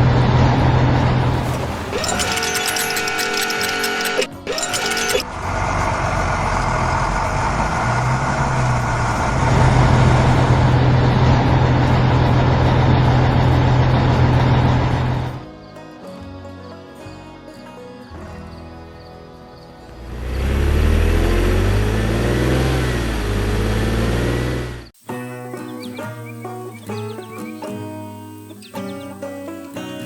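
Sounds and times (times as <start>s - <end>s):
heavy vehicle engine droning: 0.0s - 15.4s, 19.8s - 25.0s
background music melody: 0.0s - 30.0s
low bass line: 5.2s - 15.4s.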